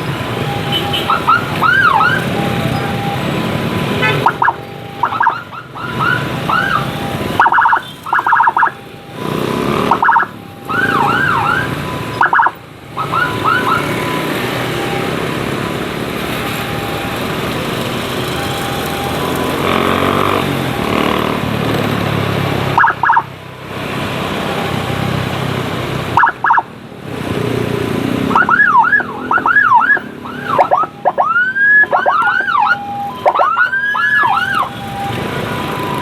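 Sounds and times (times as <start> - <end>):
siren whooping: 0.0 - 21.4, 22.2 - 25.4, 26.1 - 26.7, 28.2 - 36.0
siren chirps: 0.0 - 21.5, 22.2 - 25.3, 26.1 - 26.8, 28.2 - 36.0.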